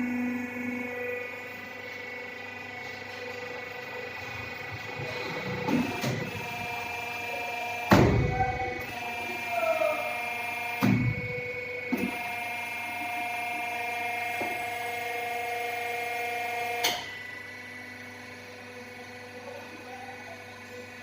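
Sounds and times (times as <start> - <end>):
pipe bending machine whine: 0.0 - 21.0
machine thumps: 7.9 - 8.4.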